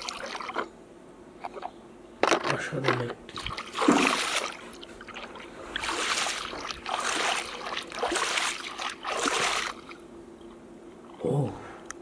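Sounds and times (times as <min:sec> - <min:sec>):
water splashing and sloshing: 0:00.0 - 0:00.7, 0:02.9 - 0:10.1.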